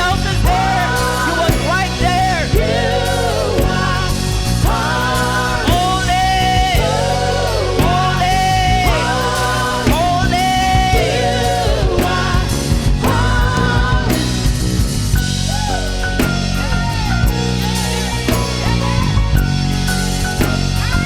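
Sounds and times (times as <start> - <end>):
worship band music: 0.0 - 21.0.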